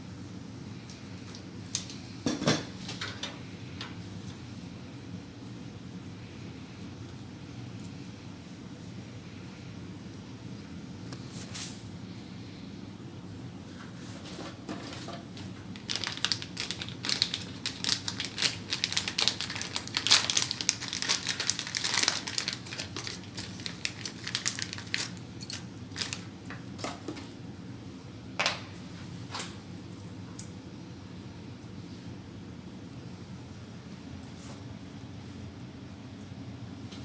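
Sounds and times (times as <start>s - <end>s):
steady low hum: 0.0s - 37.0s
cable plastic crinkling and clicking: 14.7s - 27.3s.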